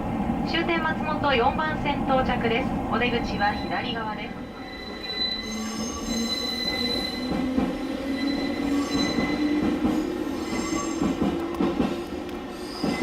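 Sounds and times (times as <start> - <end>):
electric train low hum: 0.0 - 6.1.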